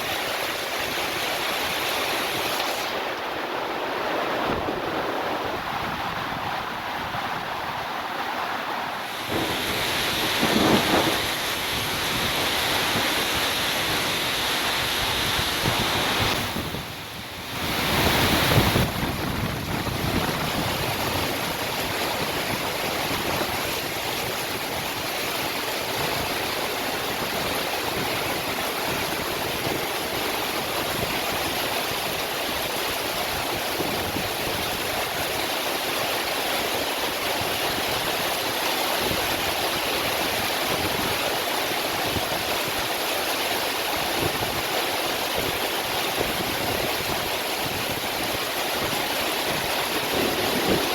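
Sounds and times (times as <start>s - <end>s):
heavy rain pouring: 0.0s - 50.9s.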